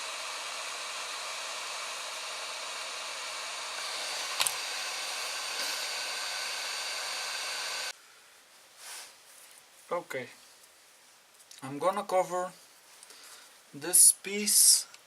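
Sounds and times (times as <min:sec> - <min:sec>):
hot air blowing hiss: 0:00.0 - 0:08.0.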